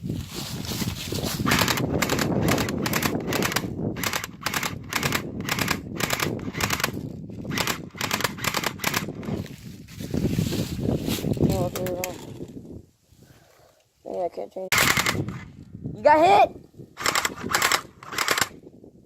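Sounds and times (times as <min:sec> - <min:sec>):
airsoft guns firing rapidly: 0:01.5 - 0:06.9, 0:07.5 - 0:09.2, 0:14.7 - 0:15.4, 0:17.0 - 0:18.5.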